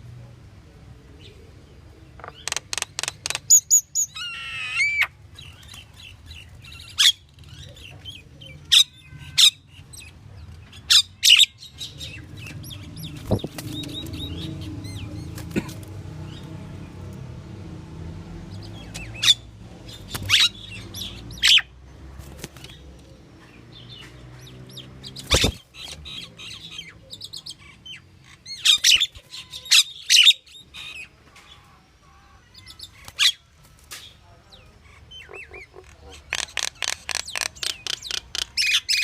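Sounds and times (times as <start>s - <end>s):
bird whistles and squawks: 3.5s - 5.2s, 25.1s - 27.6s.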